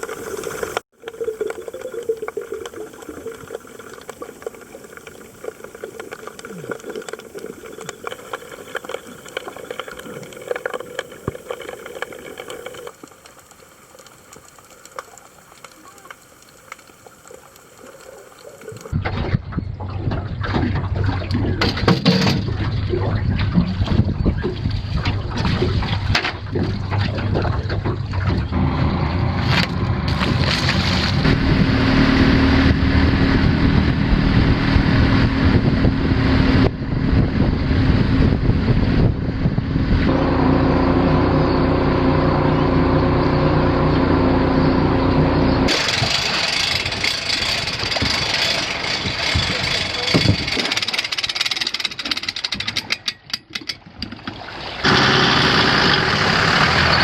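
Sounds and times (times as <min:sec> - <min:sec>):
motor droning: 0:26.6 - 0:50.8, 0:54.8 - 0:57.0.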